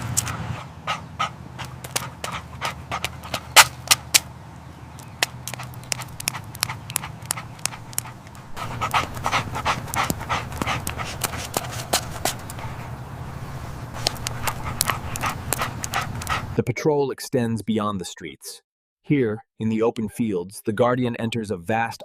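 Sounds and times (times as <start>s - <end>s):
dog panting: 0.0s - 3.7s, 5.0s - 13.0s, 13.9s - 16.6s
steady low hum: 0.0s - 16.6s.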